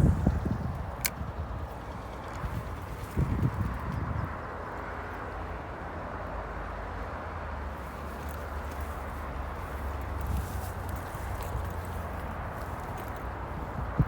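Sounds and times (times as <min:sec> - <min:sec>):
wind on microphone: 0:00.0 - 0:04.6, 0:12.5 - 0:14.0.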